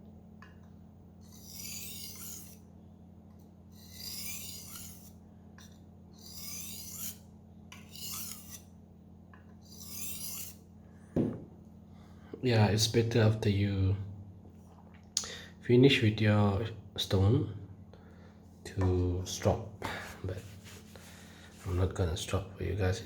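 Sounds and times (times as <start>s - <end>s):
knife scraping on whetstone: 1.2s - 2.6s, 3.7s - 8.7s, 9.6s - 10.6s.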